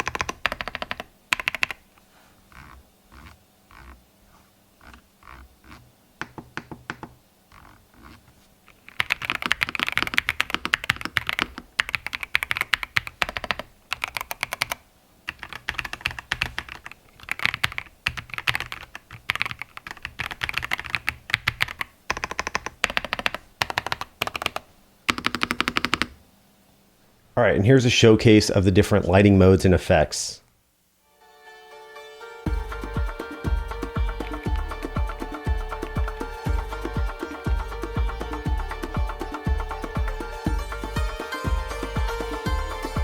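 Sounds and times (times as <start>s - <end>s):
mechanical keyboard typing: 0.0s - 1.8s, 8.8s - 26.2s.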